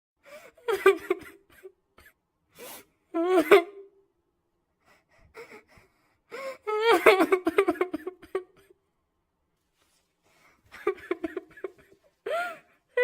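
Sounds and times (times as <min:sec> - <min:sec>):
girl crying and sobbing: 0:00.4 - 0:01.7, 0:03.1 - 0:03.9, 0:06.3 - 0:08.8, 0:10.7 - 0:13.0
faint sniffling breaths: 0:02.5 - 0:03.0.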